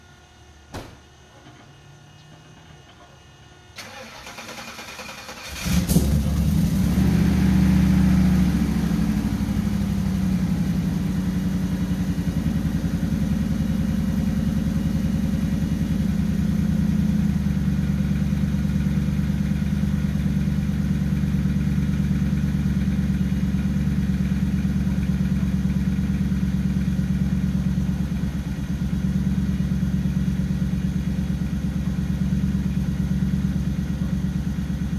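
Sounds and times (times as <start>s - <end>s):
pickup engine cranking and idling: 3.8s - 34.9s.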